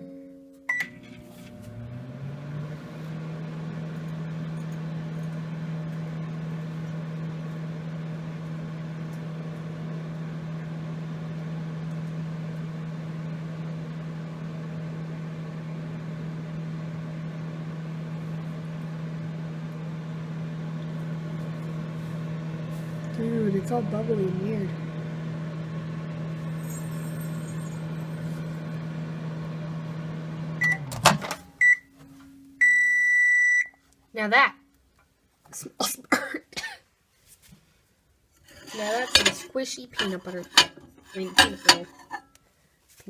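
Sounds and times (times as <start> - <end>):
microwave oven humming: 0.0 - 34.3
microwave beep: 0.7 - 1.1, 30.4 - 32.0, 32.6 - 33.8.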